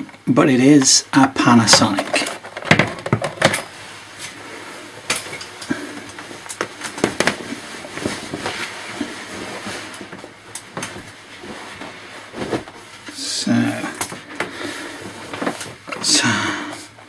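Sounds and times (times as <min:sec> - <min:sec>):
plastic laptop case being handled: 0:06.2 - 0:12.9.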